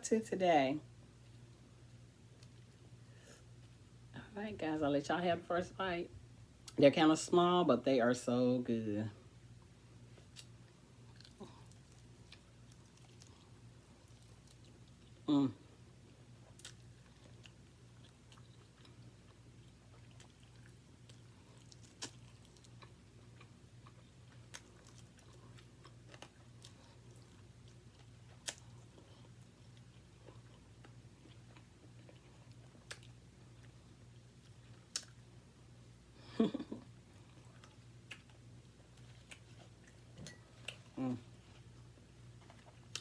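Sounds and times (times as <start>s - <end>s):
chewing with crunches: 10.1s - 35.4s, 36.9s - 43.0s.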